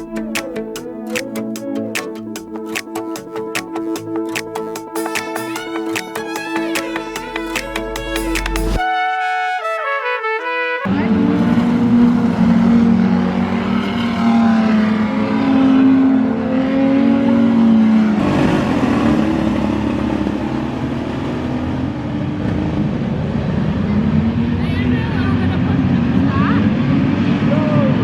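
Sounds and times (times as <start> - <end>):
race car engines revving: 10.9 - 28.0.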